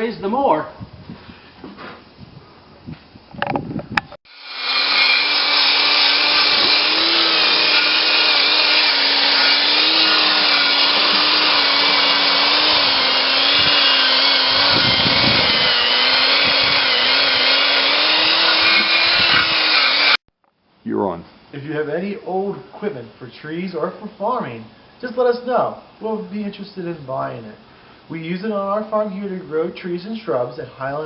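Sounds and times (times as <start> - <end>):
tractor engine running: 6.3 - 20.1.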